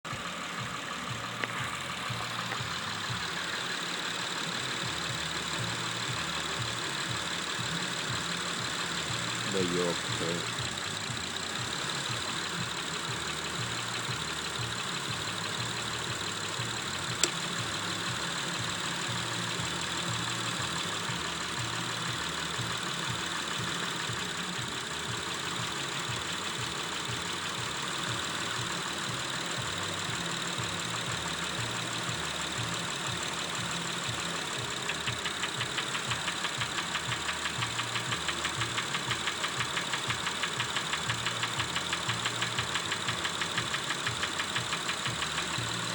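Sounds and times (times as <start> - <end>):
engine idling with rapid knock: 0.0 - 45.9
sharp click: 17.2 - 17.5.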